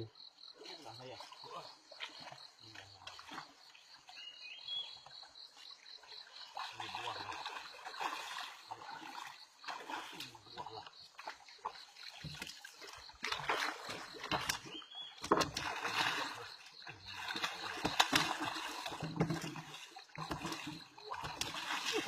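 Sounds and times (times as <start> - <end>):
water splashing beside boat: 0.6 - 22.0.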